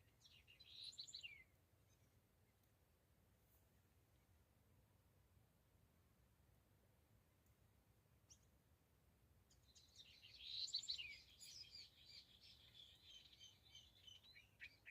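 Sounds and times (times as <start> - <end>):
songbird twittering: 0.0 - 2.0, 9.5 - 14.9.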